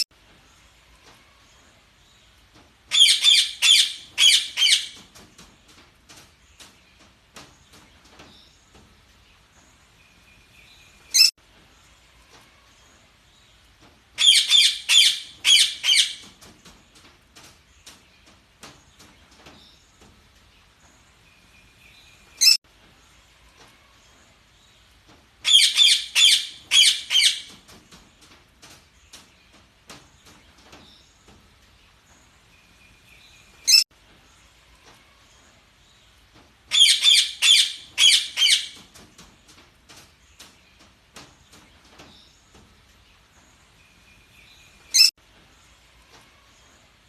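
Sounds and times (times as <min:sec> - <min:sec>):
budgerigars chirping: 0:36.7 - 0:38.8.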